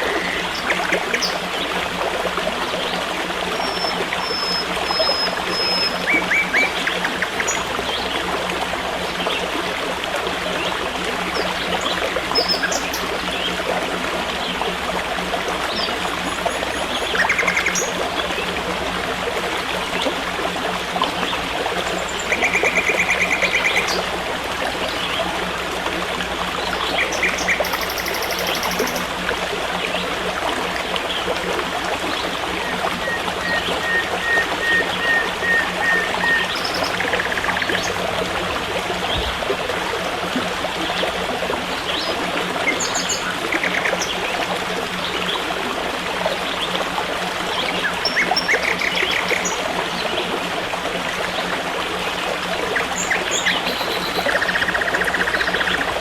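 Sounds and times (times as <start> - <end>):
birds chirping trills: 0.0 - 1.8, 3.5 - 8.0, 12.4 - 13.5, 15.6 - 18.0, 21.9 - 24.1, 26.8 - 29.2, 32.3 - 38.0, 53.0 - 55.8
stream water rushing: 0.0 - 56.0.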